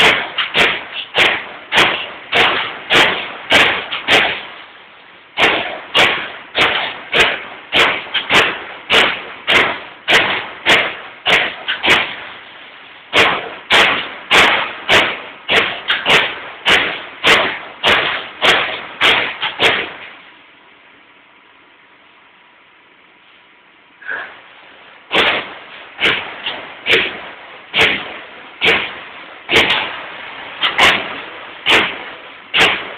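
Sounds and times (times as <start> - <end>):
punch press punching sheet metal: 0.0 - 12.5, 13.1 - 20.2, 25.1 - 32.9
punch press stroke: 25.1 - 30.0, 30.6 - 32.9.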